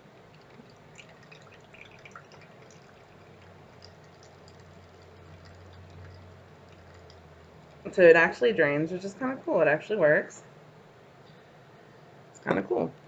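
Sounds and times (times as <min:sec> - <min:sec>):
water dripping and trickling: 0:00.0 - 0:08.1
faint low hum: 0:00.0 - 0:13.0.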